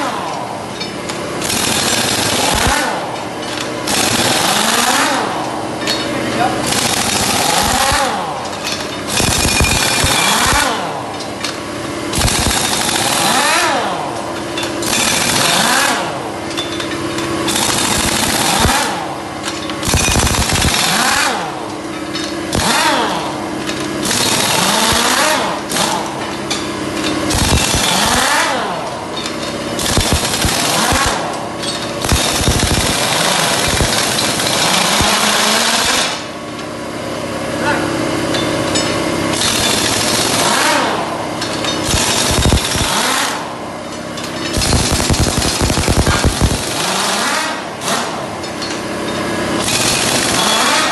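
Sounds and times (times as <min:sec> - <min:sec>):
power tool on metal: 0:09.1 - 0:10.9, 0:12.1 - 0:14.0, 0:19.8 - 0:21.5, 0:24.0 - 0:26.1, 0:27.3 - 0:28.8, 0:29.8 - 0:36.3, 0:39.3 - 0:41.0, 0:41.8 - 0:43.5, 0:44.5 - 0:48.7, 0:49.6 - 0:50.9.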